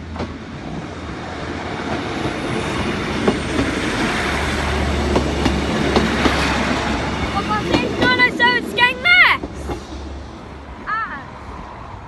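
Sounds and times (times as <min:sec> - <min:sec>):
train wheels rumbling on rail: 0:00.0 - 0:12.0
wheels clicking over rail joints: 0:05.0 - 0:09.9.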